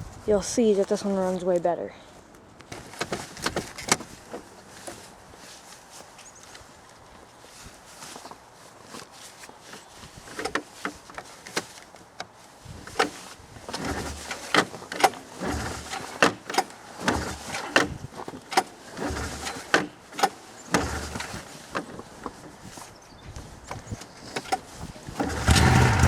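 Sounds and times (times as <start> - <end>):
microphone handling clicks and knocks: 2.6 - 5.1, 9.7 - 26.0.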